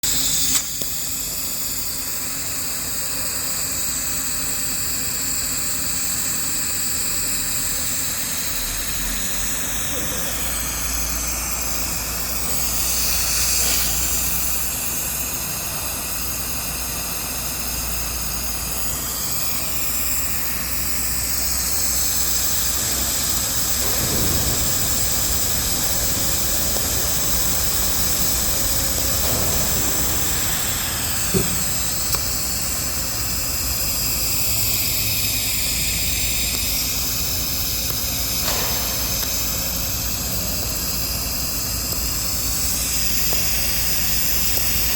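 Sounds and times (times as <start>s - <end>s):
welding arc hissing: 0.0s - 44.9s
short click: 0.3s - 0.9s.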